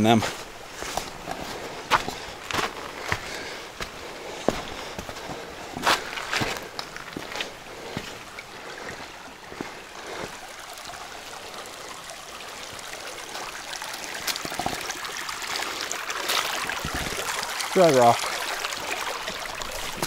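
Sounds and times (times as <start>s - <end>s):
creek flowing over rocks: 0.0s - 20.0s
footsteps: 0.2s - 10.4s.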